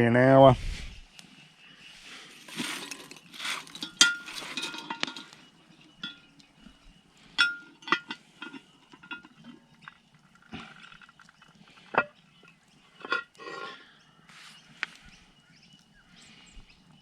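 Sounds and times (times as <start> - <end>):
metal clinks knocks and scrapes: 2.4 - 13.9
ringing clinks of metal on metal: 3.8 - 6.4, 7.3 - 9.7.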